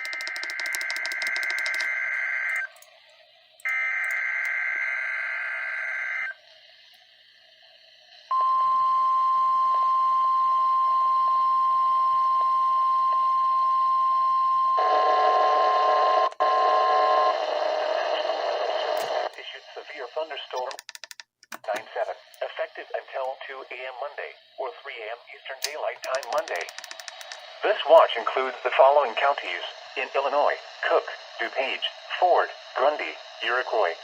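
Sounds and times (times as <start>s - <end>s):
steady high alarm beep: 0.0s - 2.8s, 3.6s - 6.4s, 8.3s - 15.3s
warbling data bursts: 0.0s - 2.8s, 21.7s - 34.0s.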